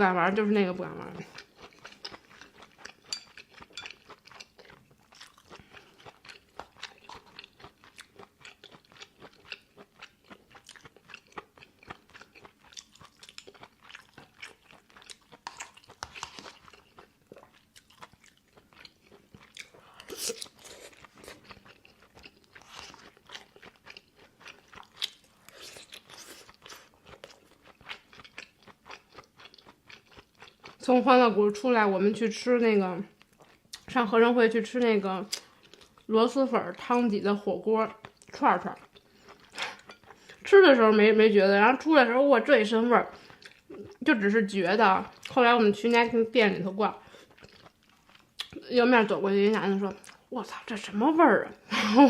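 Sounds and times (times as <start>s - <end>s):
person chewing crunchy food: 1.1s - 30.8s, 33.2s - 33.9s, 35.3s - 36.1s, 37.9s - 40.5s, 43.1s - 44.0s, 45.1s - 45.4s, 47.0s - 48.7s, 49.9s - 50.3s.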